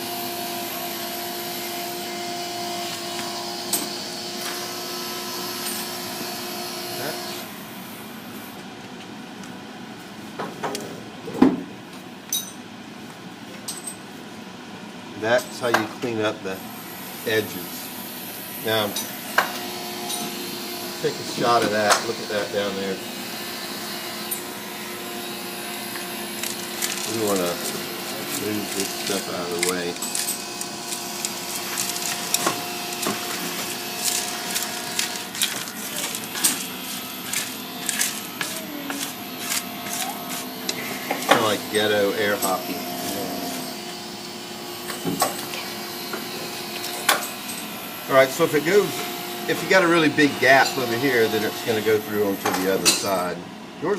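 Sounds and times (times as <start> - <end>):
solder beads scraping and clicking: 28.3 - 40.8.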